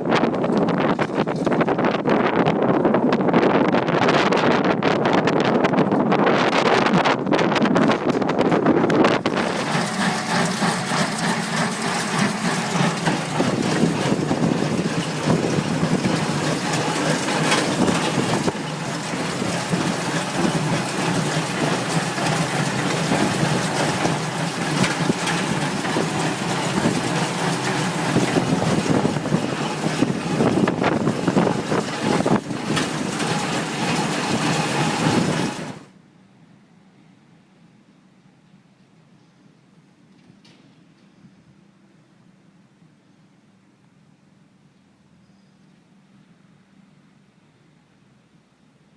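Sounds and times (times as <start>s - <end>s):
wind buffeting microphone: 0.0s - 35.9s
tractor engine running: 8.4s - 35.9s.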